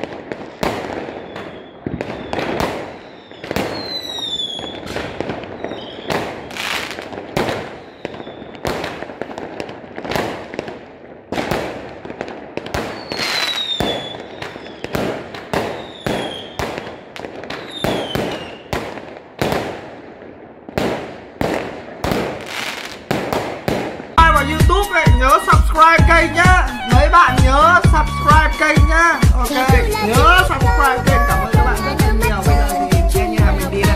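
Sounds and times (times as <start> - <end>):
firework bangs: 0.0 - 33.2
falling firework whistles: 0.6 - 8.9, 12.8 - 18.8.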